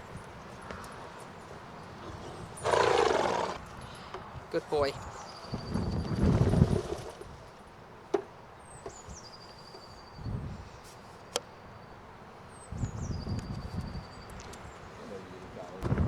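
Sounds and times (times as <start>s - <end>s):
wind rumbling on microphone: 0.0s - 7.5s, 10.2s - 10.8s, 12.6s - 16.0s.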